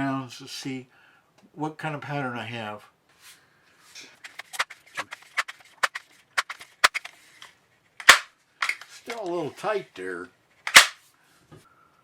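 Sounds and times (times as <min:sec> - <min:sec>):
air rifle mechanism clicks: 0:08.0 - 0:08.9, 0:10.7 - 0:11.0.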